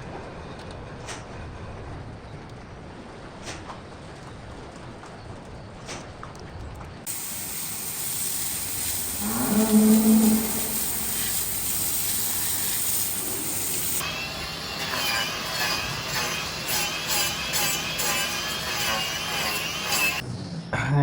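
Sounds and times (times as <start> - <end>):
steady hiss: 7.1 - 14.6
cow mooing: 9.2 - 11.1.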